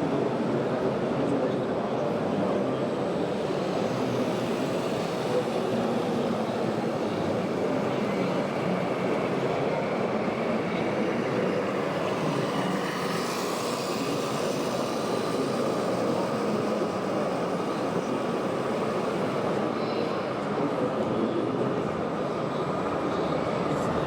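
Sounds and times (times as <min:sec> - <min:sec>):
rc model trucks running: 0:00.2 - 0:24.0.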